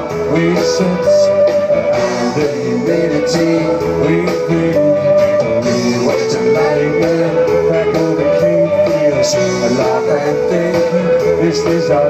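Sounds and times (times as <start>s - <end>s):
rock band guitar playing: 0.0s - 12.0s
steady drum beat: 0.0s - 12.0s.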